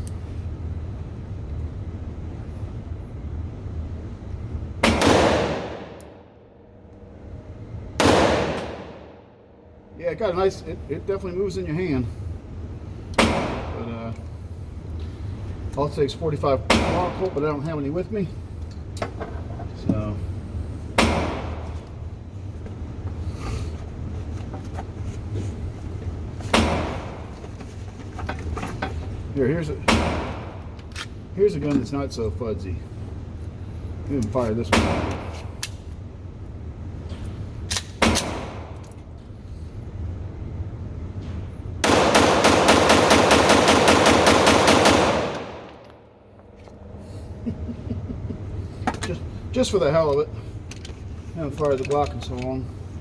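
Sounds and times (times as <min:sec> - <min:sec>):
semi-automatic gunfire: 0:04.8 - 0:06.0, 0:08.0 - 0:09.0, 0:41.8 - 0:45.8.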